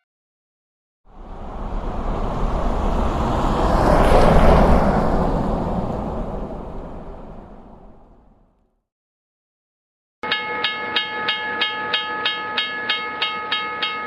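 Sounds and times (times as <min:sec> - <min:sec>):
vehicle driving past: 0:01.1 - 0:08.6.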